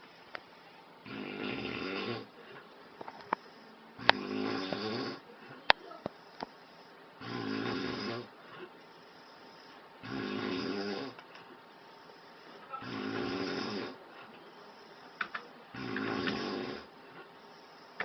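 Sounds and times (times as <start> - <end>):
person snoring: 1.0 - 2.5, 3.2 - 5.4, 6.2 - 11.2, 12.0 - 14.0, 15.7 - 16.9
sharp clicks: 15.2 - 16.4.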